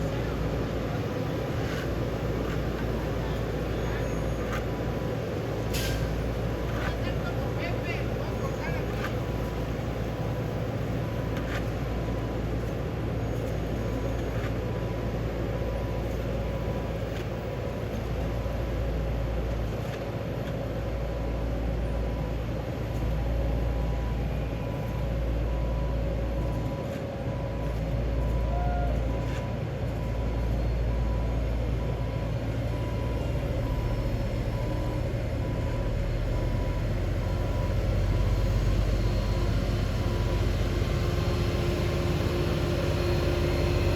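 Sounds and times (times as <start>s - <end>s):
diesel paving machinery rumbling: 0.0s - 43.9s
reversing alarm beeping: 23.6s - 43.9s.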